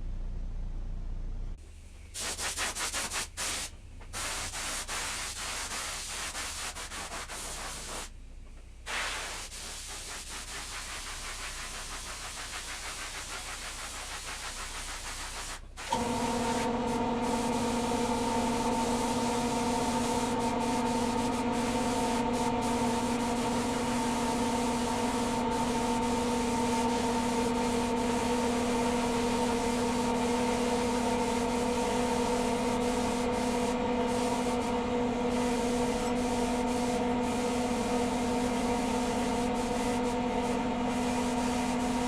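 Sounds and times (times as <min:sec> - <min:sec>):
abrasive sanding noise: 0:02.2 - 0:08.1, 0:08.9 - 0:42.0
motor humming: 0:15.8 - 0:42.0.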